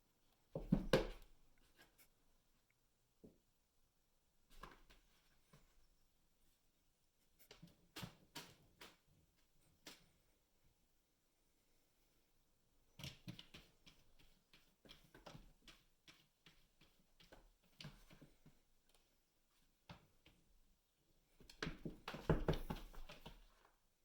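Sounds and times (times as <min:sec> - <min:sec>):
cats play-fighting thumps: 0:00.5 - 0:01.2, 0:21.6 - 0:23.4.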